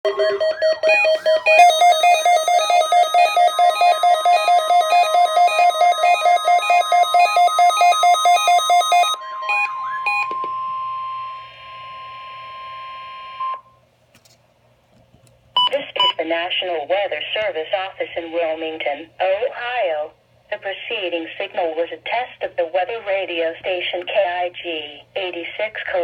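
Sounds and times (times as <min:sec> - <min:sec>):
electronic alarm beeps: 0:00.1 - 0:13.7, 0:15.6 - 0:16.2
steady warning alarm tone: 0:00.1 - 0:13.7.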